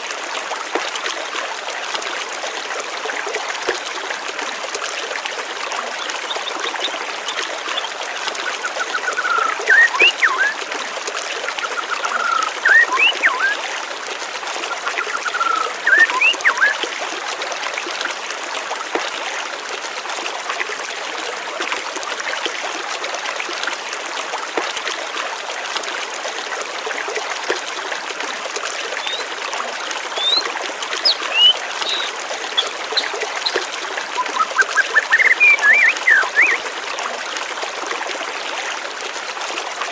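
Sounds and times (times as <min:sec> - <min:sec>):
stream of water flowing: 0:00.0 - 0:39.9
birds chirping: 0:11.7 - 0:13.6, 0:15.0 - 0:16.7, 0:29.0 - 0:29.2, 0:30.2 - 0:30.4, 0:31.0 - 0:33.6, 0:34.2 - 0:36.6.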